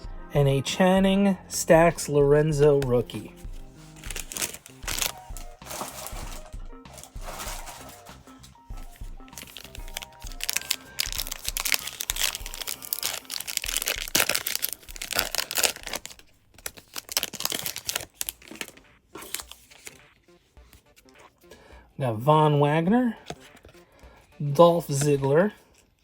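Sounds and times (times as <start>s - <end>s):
foil wrapper tearing and crinkling: 3.6s - 20.1s.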